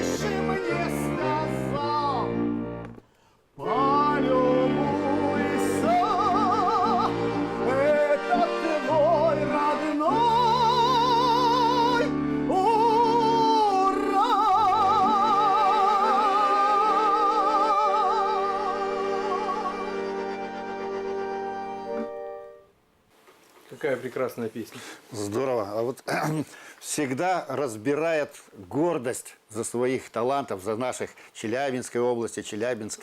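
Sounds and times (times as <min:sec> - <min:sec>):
operatic singing: 0:00.0 - 0:02.6, 0:03.6 - 0:21.4
sustained accompaniment: 0:00.0 - 0:03.0, 0:03.6 - 0:22.7.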